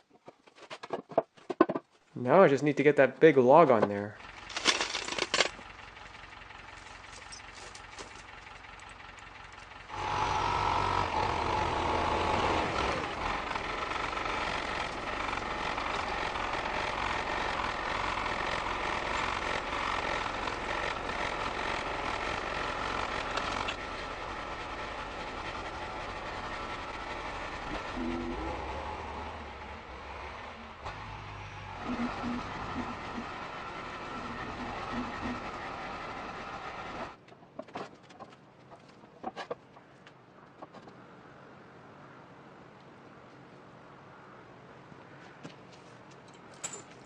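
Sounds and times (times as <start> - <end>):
engine running: 2.2 - 37.2.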